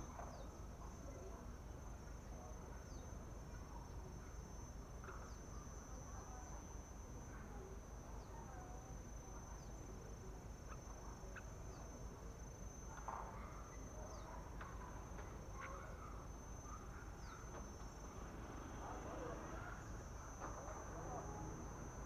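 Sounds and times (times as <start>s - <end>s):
high insect drone: 17.4s - 22.0s.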